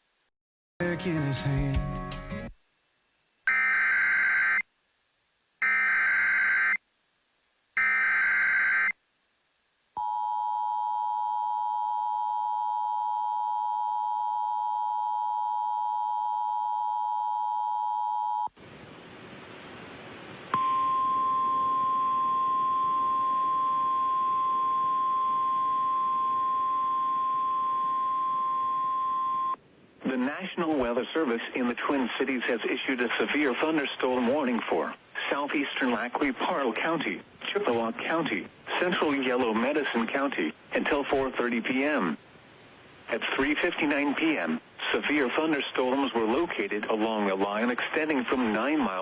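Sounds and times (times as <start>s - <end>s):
static hiss: 2.5s - 10.0s, 18.5s - 49.0s
two-tone attention signal: 20.6s - 29.6s.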